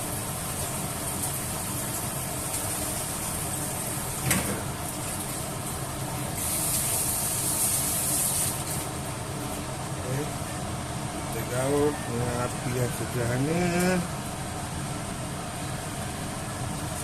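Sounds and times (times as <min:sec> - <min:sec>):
pot hissing on stove: 0:00.0 - 0:09.0.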